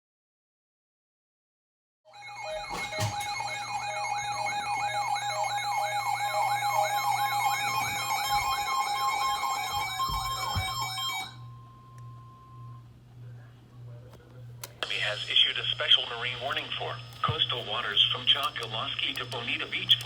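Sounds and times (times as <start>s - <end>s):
rising electronic yelp siren: 2.2s - 11.5s
steady electronic tones: 2.2s - 12.8s.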